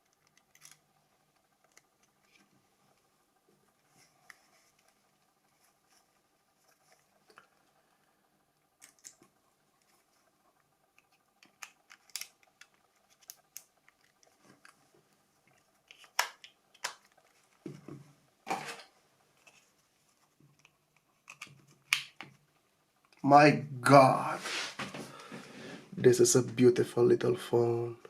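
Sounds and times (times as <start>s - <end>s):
plastic snaps: 15.9s - 17.2s.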